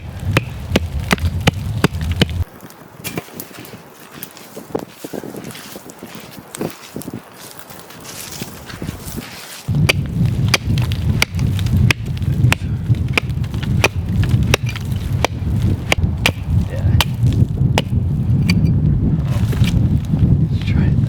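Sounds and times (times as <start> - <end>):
chopping strikes on wood: 0.0 - 3.3, 9.8 - 17.2, 17.8 - 18.6
wind rumble on microphone: 0.0 - 21.0.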